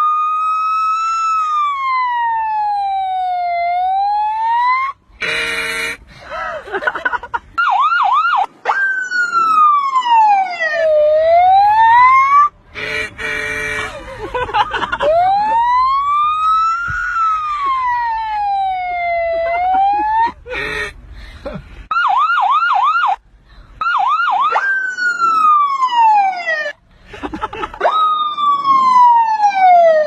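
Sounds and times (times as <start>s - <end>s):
siren wailing and yelping: 0.0s - 5.0s, 7.6s - 12.6s, 14.6s - 20.4s, 21.9s - 23.2s, 23.8s - 26.8s, 27.7s - 30.0s.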